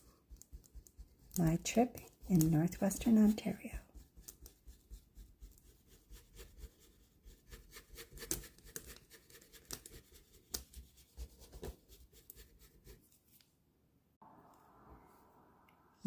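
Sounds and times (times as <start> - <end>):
paintbrush taps and strokes: 0.1 - 6.2.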